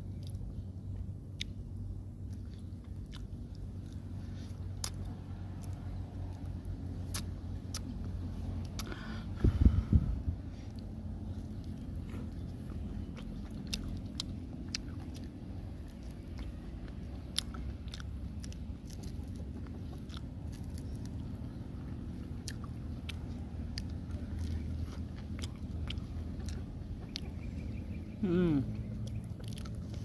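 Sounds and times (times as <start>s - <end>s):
person chewing food: 0.0s - 30.0s
mouth clicks and smacks: 4.7s - 9.6s.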